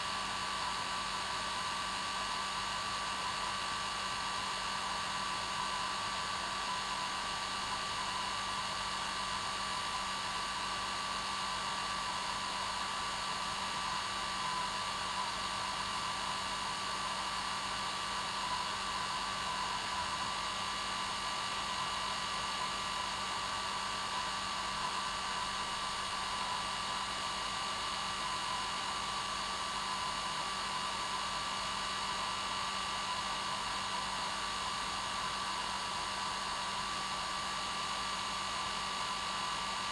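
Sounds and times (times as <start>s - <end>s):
hair dryer running: 11.4s - 39.9s.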